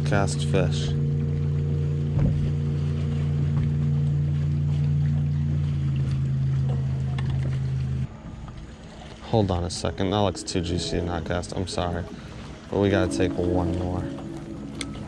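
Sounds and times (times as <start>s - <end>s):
boat motor hum: 0.0s - 15.0s.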